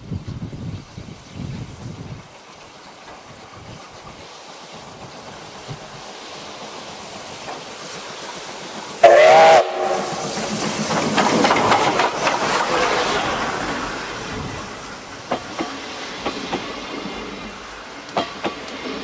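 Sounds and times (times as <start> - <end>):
steam locomotive exhaust beats: 0.0 - 19.0
steam whistle blast: 9.0 - 10.3.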